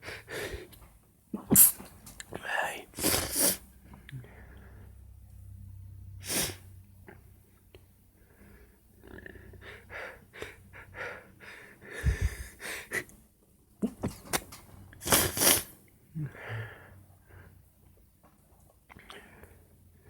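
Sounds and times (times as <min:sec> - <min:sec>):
person sneezing: 0:01.4 - 0:01.8
wheezy breaths and sniffs: 0:08.2 - 0:13.1.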